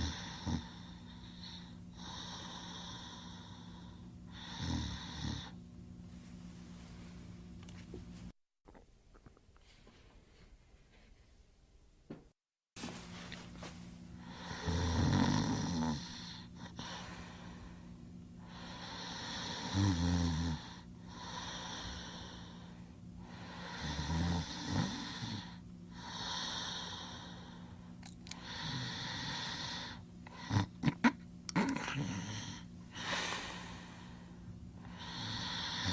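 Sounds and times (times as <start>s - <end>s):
low rasping snore: 0.0s - 3.6s, 4.3s - 5.6s, 14.2s - 16.9s, 18.6s - 22.5s, 23.4s - 27.3s, 34.9s - 35.9s
breathy hiss: 20.5s - 30.4s, 32.0s - 35.9s.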